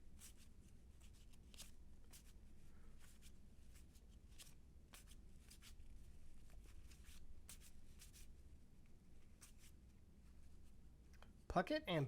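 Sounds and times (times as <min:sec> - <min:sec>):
cards swishing: 0:06.5 - 0:08.3, 0:09.4 - 0:09.8.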